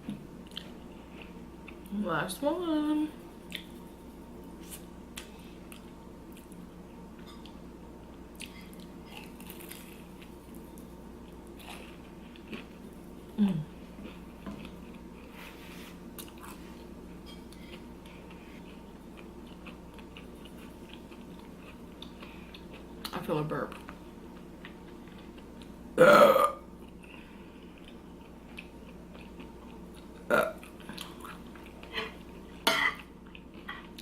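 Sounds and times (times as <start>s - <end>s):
crunching food: 8.4s - 12.9s.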